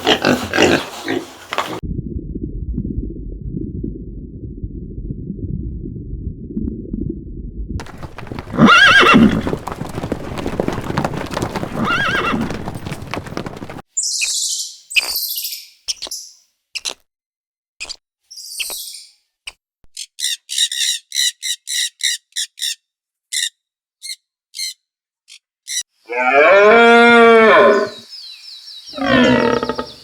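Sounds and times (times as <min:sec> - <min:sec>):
low muffled rumble: 0:01.8 - 0:08.6
dense rustling: 0:07.8 - 0:13.8
horse neighing: 0:07.8 - 0:13.8, 0:26.1 - 0:28.0, 0:29.0 - 0:30.0
high bird chirps: 0:14.0 - 0:16.5, 0:20.0 - 0:25.8.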